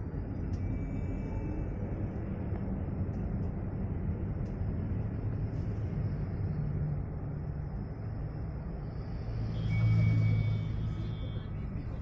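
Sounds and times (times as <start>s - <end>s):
cars driving past: 0.0s - 12.0s.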